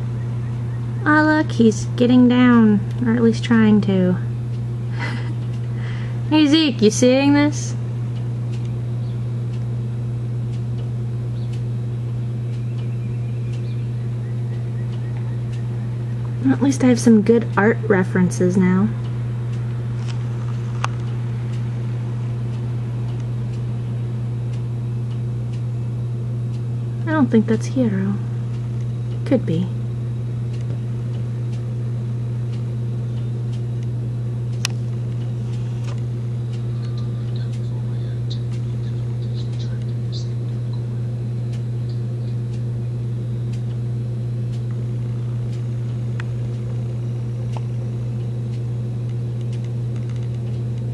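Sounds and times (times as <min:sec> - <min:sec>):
low electrical hum: 0:00.0 - 0:50.9
small birds chirping: 0:00.1 - 0:01.1, 0:08.6 - 0:09.4, 0:11.2 - 0:16.4, 0:36.6 - 0:42.6
sharp click: 0:08.2 - 0:08.8.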